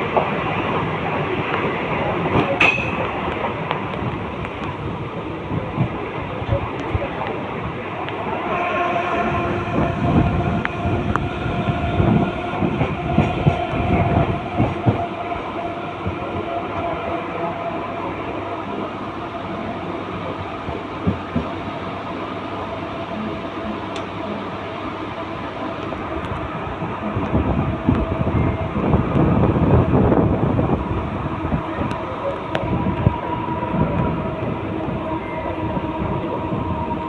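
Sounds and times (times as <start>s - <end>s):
train wheels clattering on track: 0.0s - 4.8s, 9.7s - 17.0s, 20.6s - 21.7s.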